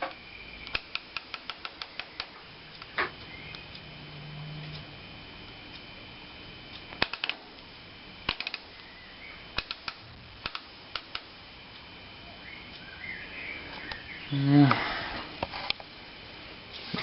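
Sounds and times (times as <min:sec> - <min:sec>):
rotary switches clicking: 0:00.0 - 0:03.9, 0:06.7 - 0:08.9, 0:09.5 - 0:11.9
faint steady high tone: 0:02.0 - 0:06.6, 0:12.0 - 0:15.2.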